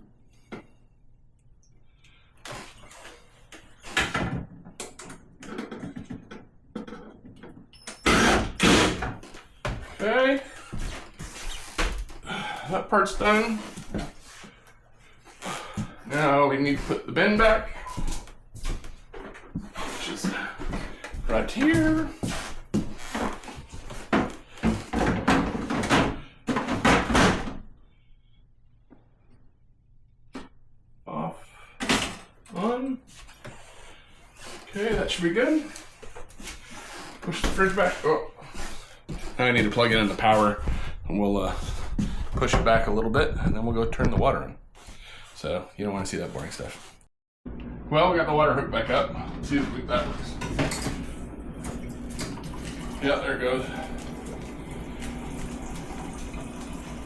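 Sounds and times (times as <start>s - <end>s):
plastic parts knocking and scraping: 3.9s - 9.8s.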